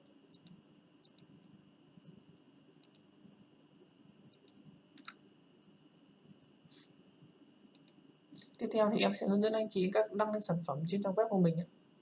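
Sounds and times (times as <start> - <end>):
computer mouse clicks: 0.3 - 3.1, 4.3 - 5.2, 7.7 - 8.6.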